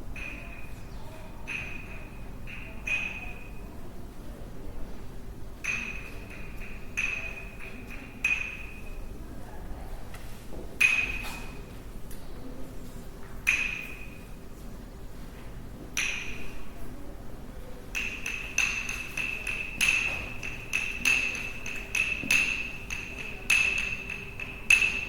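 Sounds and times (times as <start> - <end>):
sticks striking resonant object: 1.4 - 3.5, 5.6 - 9.0, 10.8 - 11.5, 13.5 - 14.2, 16.0 - 16.6, 17.9 - 25.0.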